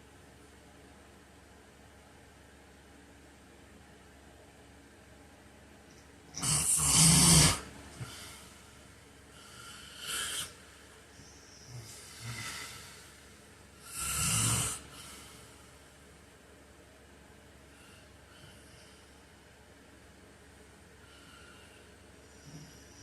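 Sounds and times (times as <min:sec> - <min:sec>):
man snoring: 0:06.4 - 0:08.4, 0:09.4 - 0:10.6, 0:11.6 - 0:13.2, 0:13.8 - 0:15.4, 0:22.4 - 0:23.0
soft breathing: 0:07.9 - 0:16.0, 0:21.0 - 0:23.0.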